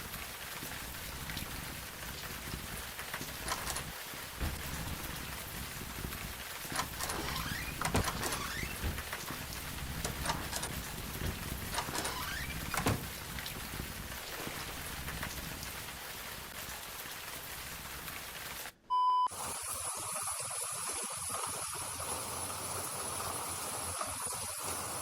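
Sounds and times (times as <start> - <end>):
short pure beep: 18.9 - 19.3.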